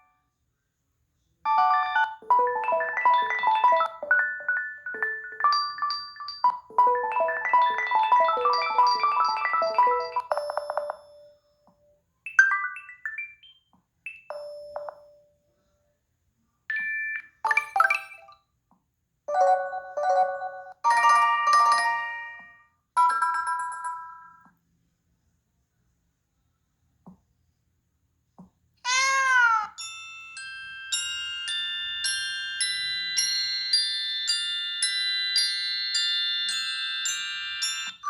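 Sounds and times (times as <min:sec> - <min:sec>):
phone ringtone jingles: 0:01.5 - 0:11.5, 0:16.7 - 0:18.4, 0:29.8 - 0:38.0.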